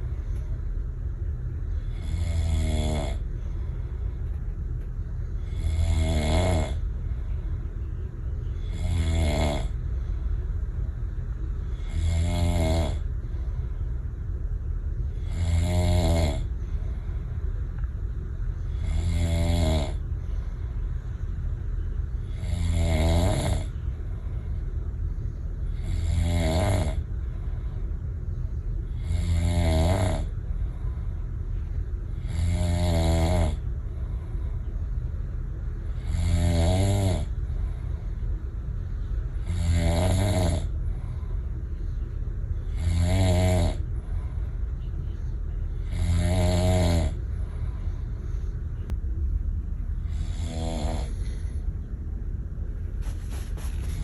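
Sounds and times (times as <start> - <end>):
steady low hum: 0.0 - 54.0
person snoring: 1.7 - 3.3, 5.4 - 6.9, 8.6 - 9.8, 11.7 - 13.1, 15.2 - 16.5, 18.7 - 20.0, 22.3 - 23.7, 25.7 - 27.1, 28.9 - 30.4, 32.2 - 33.6, 35.9 - 37.4, 39.4 - 40.8, 42.6 - 43.9, 45.8 - 48.0, 50.0 - 51.6.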